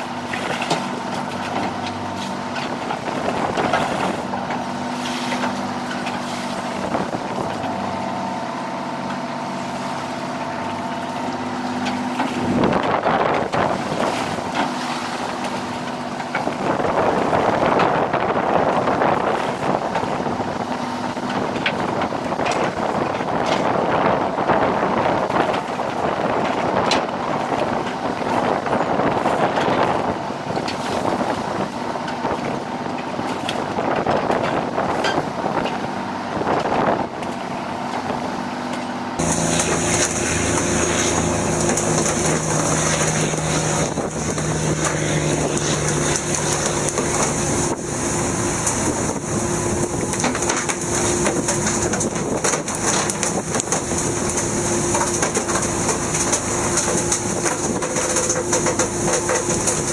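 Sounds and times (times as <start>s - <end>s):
boat engine hum: 0.0s - 59.9s
water noise: 0.0s - 59.9s
rushing wind: 12.2s - 37.9s, 39.2s - 59.9s
constant high hiss: 39.2s - 59.9s.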